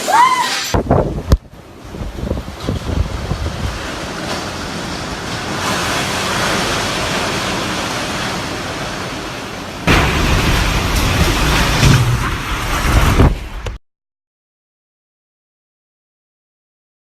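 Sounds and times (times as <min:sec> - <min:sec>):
strong wind rushing: 0:00.0 - 0:09.2
wind gust with low rumble: 0:00.8 - 0:13.8.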